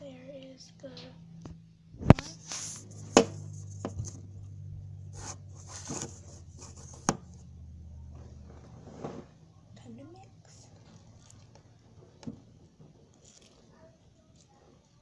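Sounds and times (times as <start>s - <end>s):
steady low hum: 0.0s - 14.8s
slime squishing and rustling: 2.1s - 15.0s.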